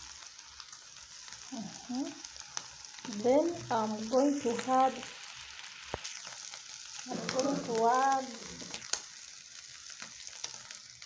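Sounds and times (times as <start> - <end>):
beef sizzling in hot oil: 0.0 - 11.0
person's voice: 1.5 - 2.2, 3.1 - 5.1, 7.1 - 8.8.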